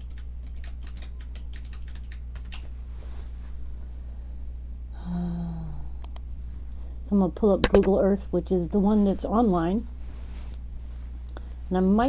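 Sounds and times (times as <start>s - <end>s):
typing on keyboard: 0.1s - 2.5s.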